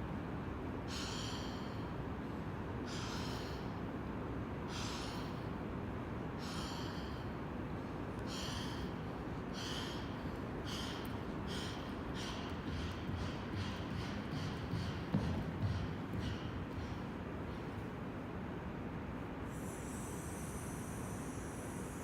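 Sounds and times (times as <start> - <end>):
low background hum: 0.0 - 22.0
person breathing sharply: 6.4 - 7.4, 8.2 - 17.7, 19.5 - 22.0.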